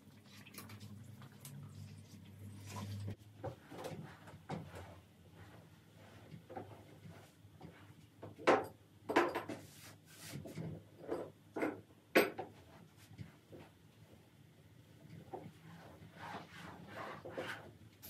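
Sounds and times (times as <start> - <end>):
objects knocking and clattering: 8.2 - 9.6.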